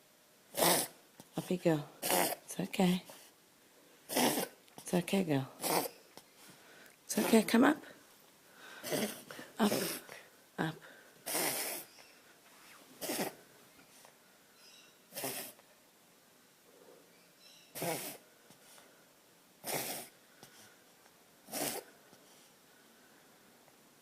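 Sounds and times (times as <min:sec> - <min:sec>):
dog reverse sneezing and coughing: 0:00.5 - 0:01.0, 0:02.0 - 0:02.5, 0:04.1 - 0:04.6, 0:05.6 - 0:06.0, 0:08.8 - 0:10.2, 0:11.2 - 0:11.9, 0:13.0 - 0:13.4, 0:15.1 - 0:15.6, 0:17.7 - 0:18.2, 0:19.6 - 0:20.2, 0:21.4 - 0:21.9.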